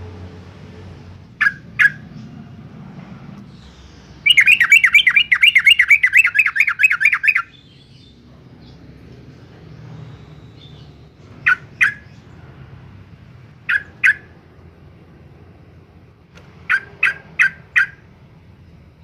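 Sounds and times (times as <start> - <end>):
bird call notes: 1.4 - 2.2, 3.6 - 8.1, 10.0 - 12.2, 13.6 - 14.4, 16.6 - 18.0.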